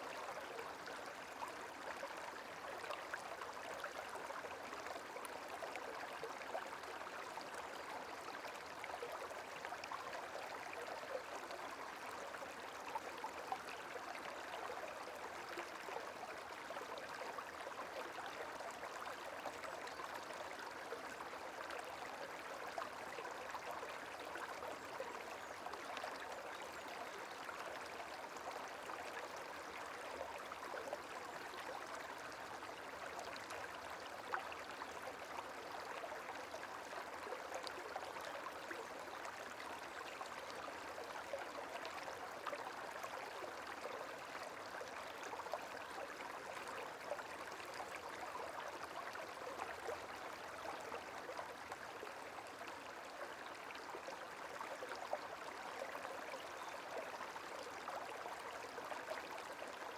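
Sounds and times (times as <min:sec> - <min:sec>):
gently flowing water: 0:00.0 - 0:59.9.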